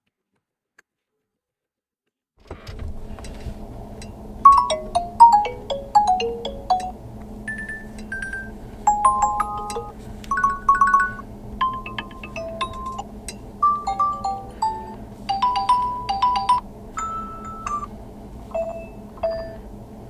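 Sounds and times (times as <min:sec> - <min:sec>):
chiming bell notes: 0:04.5 - 0:17.9, 0:18.6 - 0:19.6
smartphone ringtone melody: 0:04.5 - 0:17.9, 0:18.6 - 0:19.6.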